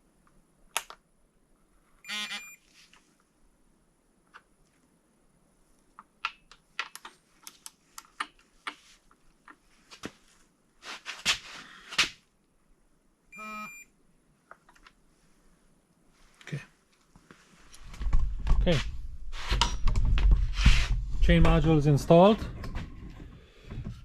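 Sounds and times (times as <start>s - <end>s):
short electronic beep: 2.1s - 2.6s, 13.4s - 13.9s.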